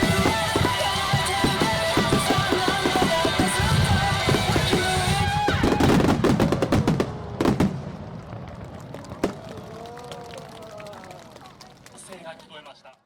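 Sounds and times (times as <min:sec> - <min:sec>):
music with drums: 0:00.0 - 0:06.4
fireworks heavy bang: 0:00.0 - 0:09.6
fireworks popping and crackling: 0:00.0 - 0:12.7.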